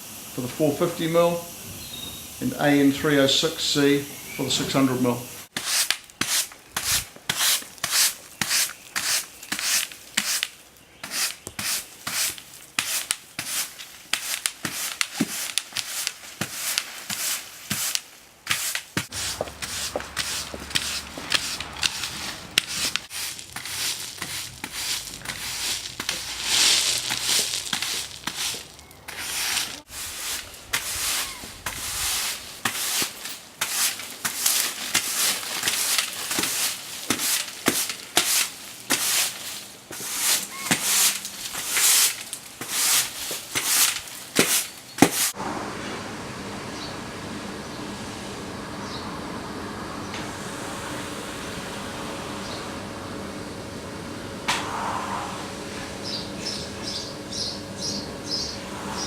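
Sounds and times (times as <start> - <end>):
push broom sweeping hard floor: 2.4 - 45.5.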